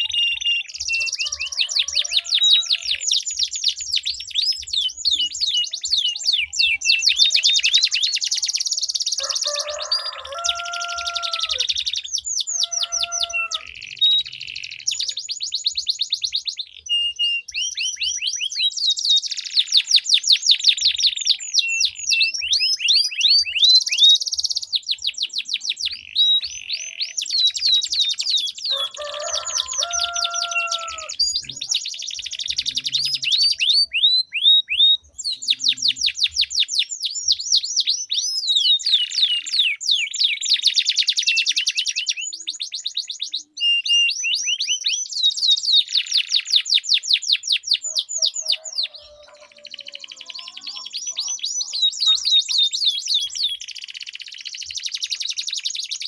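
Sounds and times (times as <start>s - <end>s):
canaries singing rolling trills: 0.0s - 56.0s.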